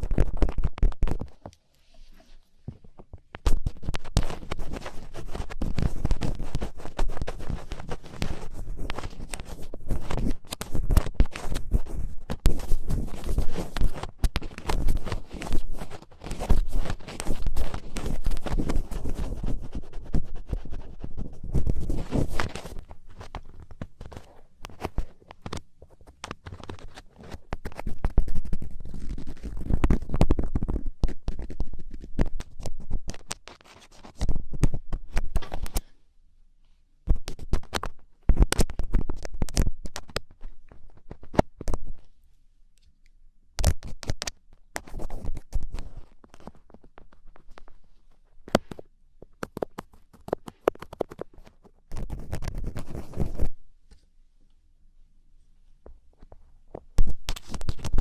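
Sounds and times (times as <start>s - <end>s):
ear picks scratching in ear: 3.5s - 34.2s.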